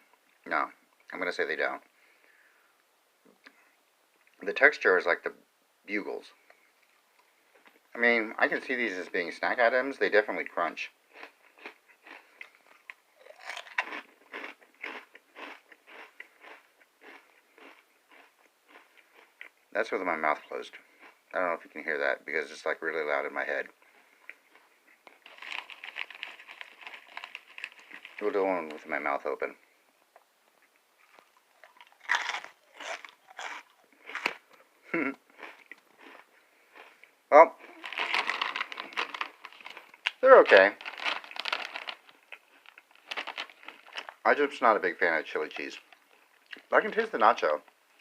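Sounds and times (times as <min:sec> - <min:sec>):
chewing crunchy snacks: 0:11.1 - 0:19.6, 0:23.8 - 0:28.9, 0:30.6 - 0:44.2.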